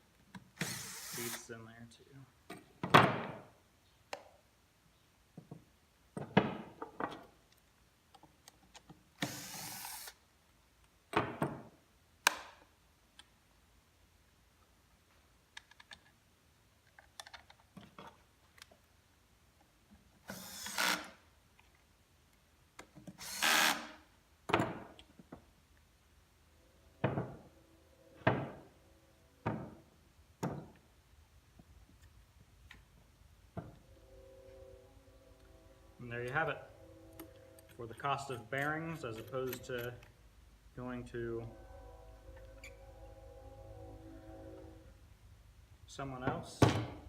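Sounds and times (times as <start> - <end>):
short bursts of noise: 0.6 - 1.5
knocks and clunks of housing: 27.0 - 27.5, 28.2 - 28.8, 29.4 - 30.9.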